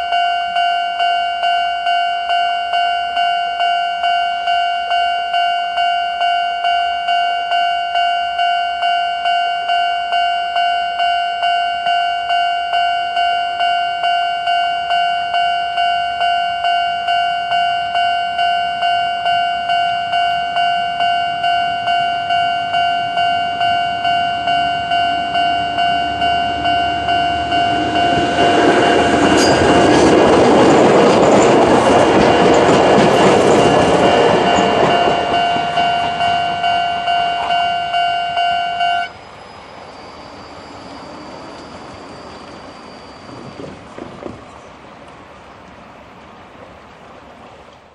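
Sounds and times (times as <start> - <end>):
level-crossing bell ringing: 0.0 - 43.6
train passing with wheel clatter: 21.4 - 47.9.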